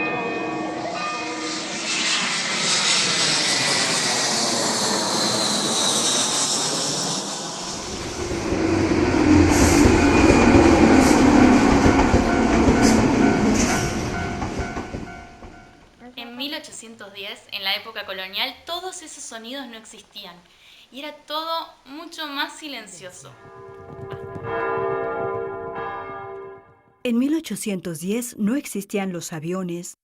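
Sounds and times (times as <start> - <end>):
wheels squealing on track: 1.0 - 15.9
hiss with falling whine: 1.4 - 11.5
train wheels rumbling: 1.4 - 16.0.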